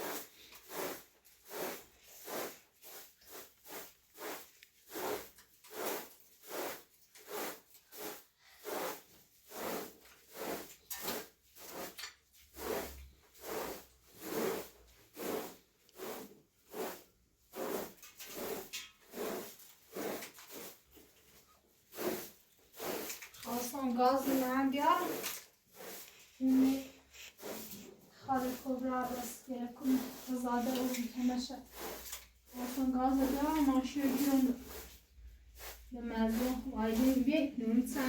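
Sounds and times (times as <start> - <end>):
rhythmic rubbing strokes: 21.9 - 38.0.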